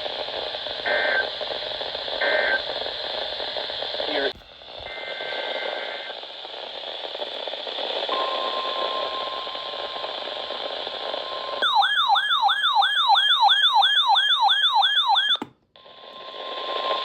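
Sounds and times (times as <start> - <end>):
radio hiss: 0.0 - 11.6, 15.8 - 17.0
electronic siren alarm: 11.6 - 15.4
steady alarm tone: 11.6 - 15.4.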